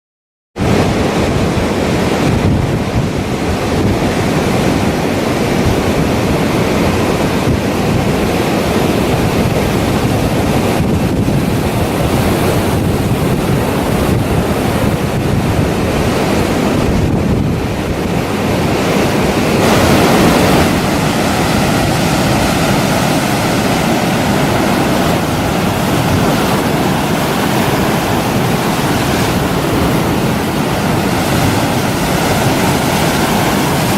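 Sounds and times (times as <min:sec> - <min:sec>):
strong wind buffeting microphone: 0:00.6 - 0:33.9
waves surging: 0:00.6 - 0:33.9.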